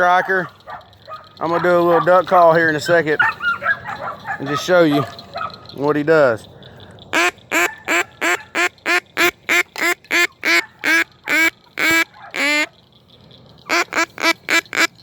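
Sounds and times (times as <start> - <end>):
duck call quacks: 7.1 - 12.7, 13.7 - 15.0.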